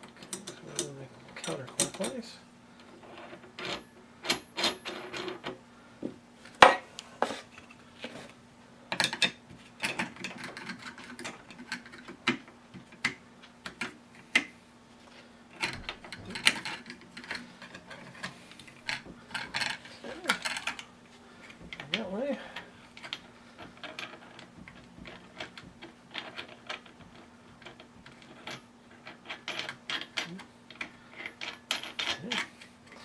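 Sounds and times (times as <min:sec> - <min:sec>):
metal clicks and rattles: 0:15.5 - 0:33.0.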